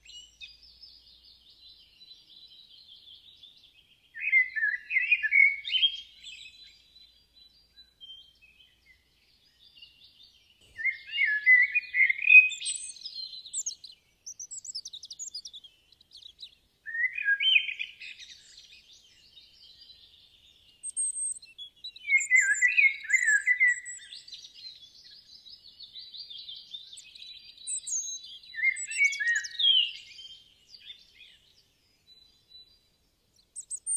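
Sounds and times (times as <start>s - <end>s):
faint high bird twittering: 0.0s - 33.9s
bird singing warbled phrase: 22.0s - 24.3s.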